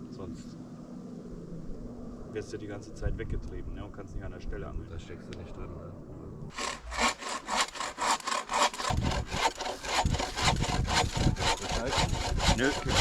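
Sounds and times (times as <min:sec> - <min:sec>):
hand saw cutting wood: 0:06.5 - 0:13.0.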